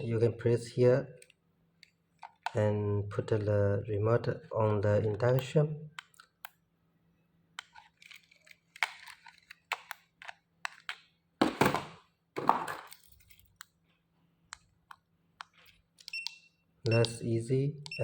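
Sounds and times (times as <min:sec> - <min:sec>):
plastic clicks and crackles: 0:01.2 - 0:02.6, 0:04.7 - 0:06.6, 0:07.6 - 0:11.1.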